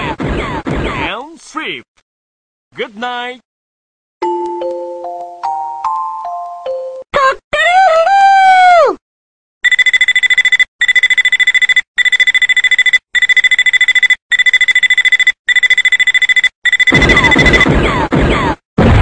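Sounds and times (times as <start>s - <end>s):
alarm clock beeping rapidly: 9.6s - 17.7s.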